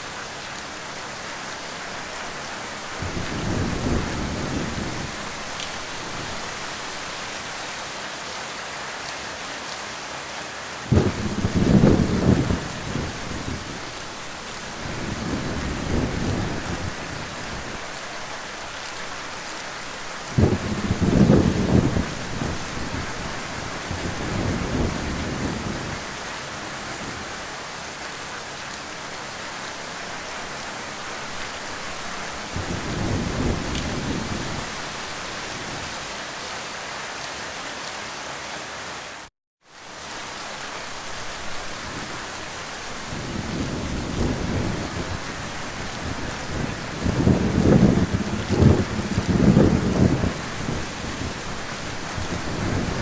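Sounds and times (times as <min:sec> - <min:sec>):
heavy rain pouring: 0:00.0 - 0:53.0
rolling thunder: 0:03.0 - 0:06.4, 0:10.9 - 0:14.0, 0:14.6 - 0:17.8, 0:20.3 - 0:26.1, 0:32.5 - 0:35.0, 0:43.0 - 0:53.0.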